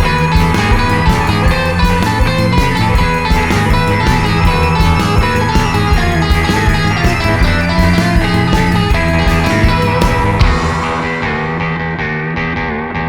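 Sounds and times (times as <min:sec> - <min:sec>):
steady drum beat: 0:00.0 - 0:12.0
rock instrumental with guitar: 0:00.0 - 0:13.0.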